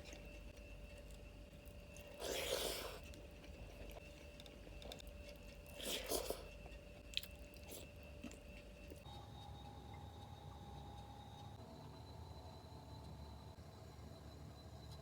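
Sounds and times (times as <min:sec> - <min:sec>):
person biting and chewing food: 0:00.9 - 0:08.6.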